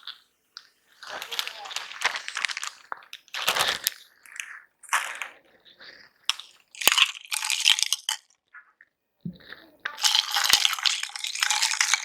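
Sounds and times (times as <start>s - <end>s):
crunching and chewing: 0.0s - 12.0s.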